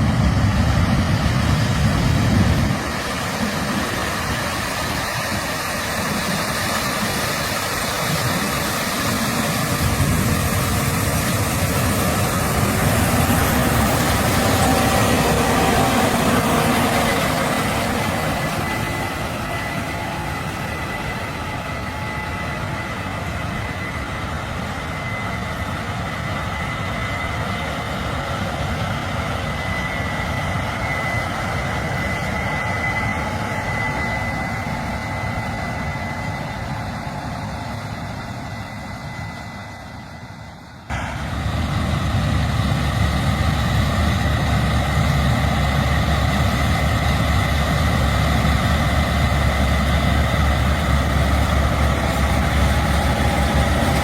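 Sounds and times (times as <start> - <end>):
combine harvester engine drone: 0.0 - 54.0
thin high whine: 2.9 - 27.6.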